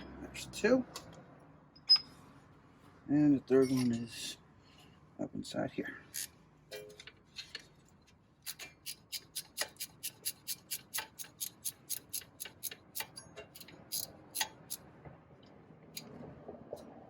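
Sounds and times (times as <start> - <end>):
ratchet wrench clicking: 8.4 - 14.8.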